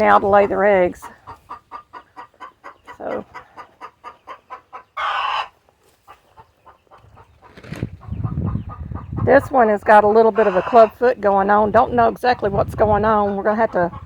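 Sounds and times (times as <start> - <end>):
harsh hen call: 0.0 - 6.2, 10.2 - 11.0
hens clucking: 0.0 - 14.0.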